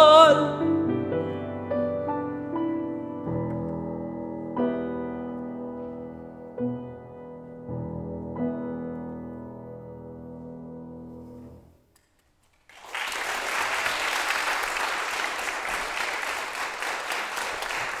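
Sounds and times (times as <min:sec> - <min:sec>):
applause: 0:12.6 - 0:18.0.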